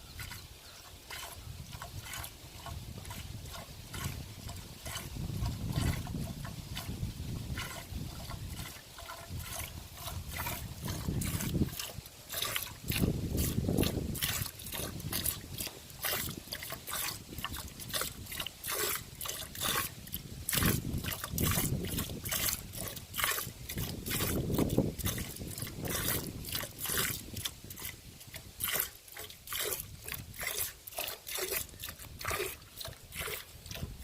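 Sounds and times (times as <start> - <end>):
milk squirting into a pail: 0.2 - 34.0.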